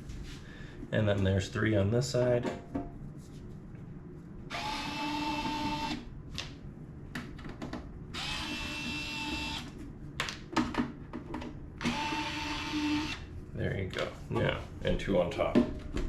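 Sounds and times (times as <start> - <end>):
power screwdriver whining: 8.2 - 9.7, 11.8 - 13.2.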